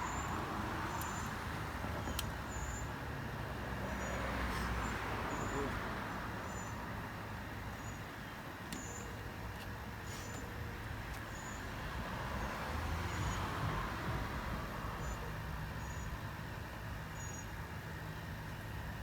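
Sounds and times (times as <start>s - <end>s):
vehicle passing by: 3.4s - 6.4s, 11.6s - 15.6s.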